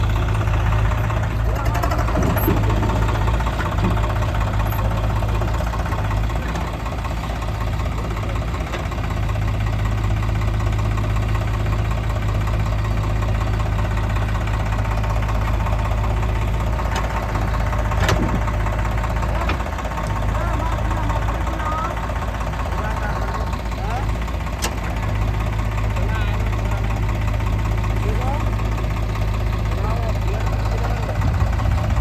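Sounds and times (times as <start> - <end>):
diesel engine running: 0.0 - 32.0.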